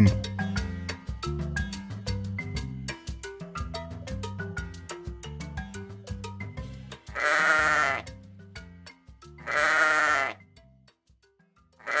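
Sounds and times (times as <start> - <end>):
background music: 0.0 - 12.0
sheep bleating: 7.1 - 8.1, 9.4 - 10.4, 11.8 - 12.0.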